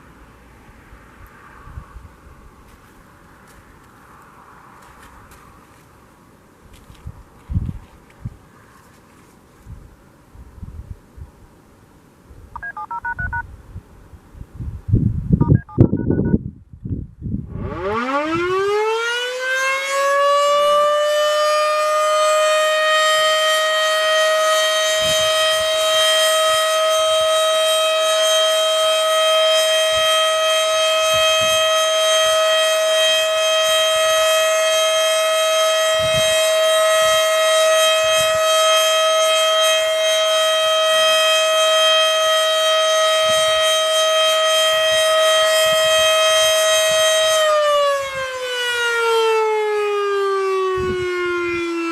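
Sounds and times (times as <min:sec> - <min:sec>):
warning siren steady tone: 0:12.6 - 0:13.4, 0:15.4 - 0:16.4, 0:17.3 - 0:51.9.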